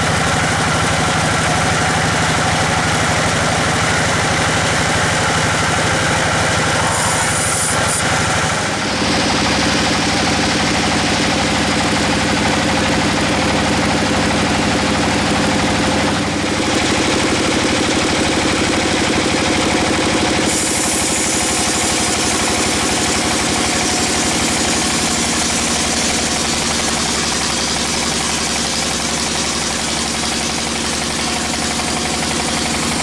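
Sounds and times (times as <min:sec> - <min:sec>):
sawmill engine running: 0:00.0 - 0:33.0
bright hissy sound: 0:06.3 - 0:08.7.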